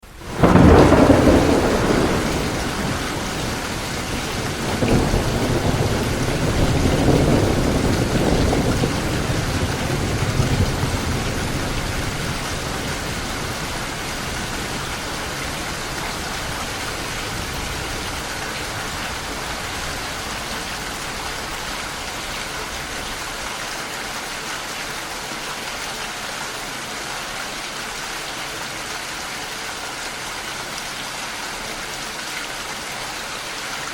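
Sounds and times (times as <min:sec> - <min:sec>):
steady rain: 0:00.0 - 0:33.9
thunderclap: 0:00.2 - 0:22.0
rolling thunder rumble: 0:00.2 - 0:23.1.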